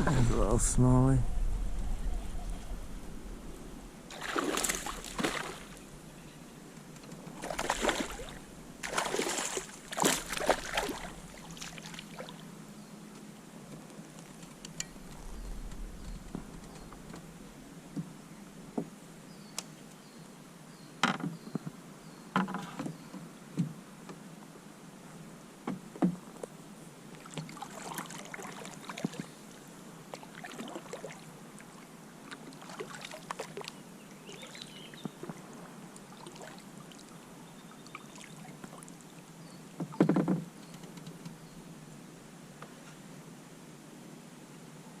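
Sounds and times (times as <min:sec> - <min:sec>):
paddle splashes and drips: 0:04.1 - 0:05.9, 0:07.2 - 0:12.5, 0:27.1 - 0:40.0.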